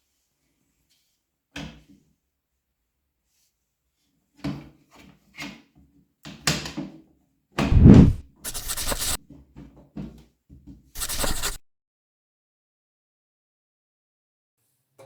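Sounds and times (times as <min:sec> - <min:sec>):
rushing scrapes: 0:07.7 - 0:09.2, 0:11.0 - 0:11.6.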